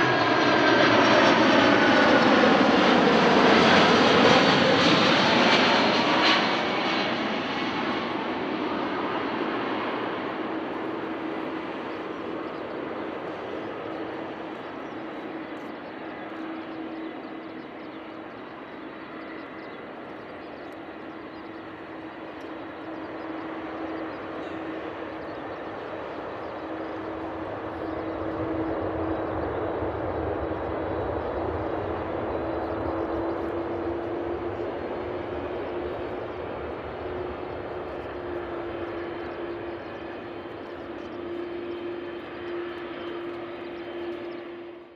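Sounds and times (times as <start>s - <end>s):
jet engines rushing: 0.0s - 44.9s.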